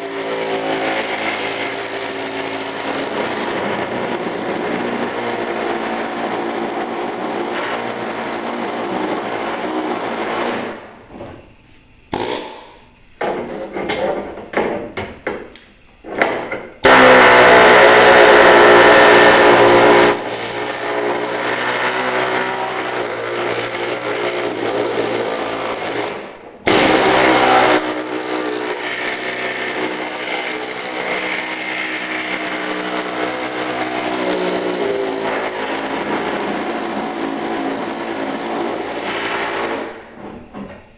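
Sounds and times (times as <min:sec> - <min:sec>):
power flanging tool hammering metal: 0:00.0 - 0:10.9, 0:16.8 - 0:40.2.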